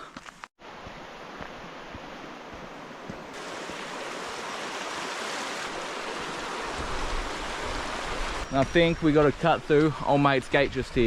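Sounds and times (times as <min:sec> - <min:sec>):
river water rushing: 0:00.7 - 0:08.5.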